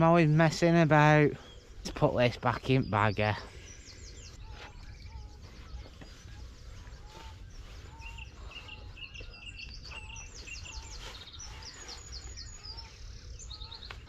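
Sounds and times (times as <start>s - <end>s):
small birds chirping and trilling: 0.0s - 14.0s.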